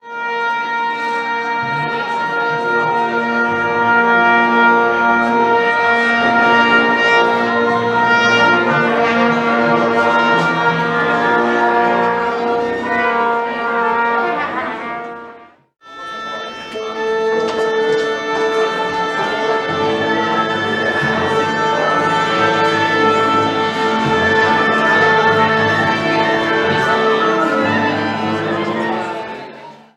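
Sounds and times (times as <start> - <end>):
orchestra tuning up: 0.0 - 29.9.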